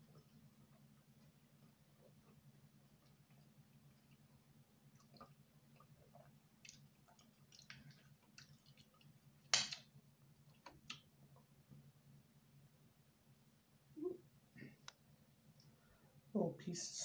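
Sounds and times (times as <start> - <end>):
wet chewing: 0.0 - 11.5.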